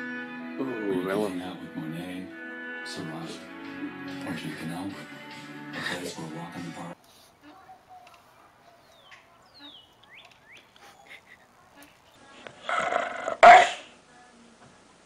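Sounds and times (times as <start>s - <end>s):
dog sneezing: 13.4s - 13.9s.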